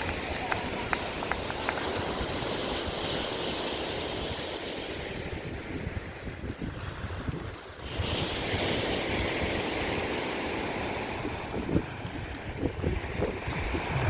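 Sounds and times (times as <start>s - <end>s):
wind rumbling on microphone: 0.0s - 4.4s, 5.4s - 14.0s
sea surf rushing: 7.9s - 14.0s.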